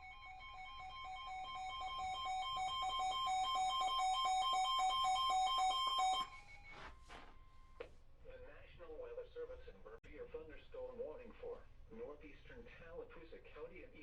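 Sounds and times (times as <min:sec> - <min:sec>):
warbling electronic alert alarm: 0:00.0 - 0:06.9.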